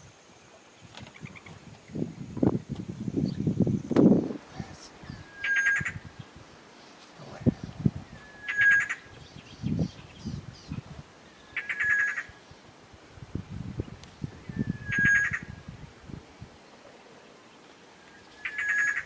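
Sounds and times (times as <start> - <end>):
bird rattling call: 11.6 - 12.3, 14.8 - 15.5, 18.4 - 19.0.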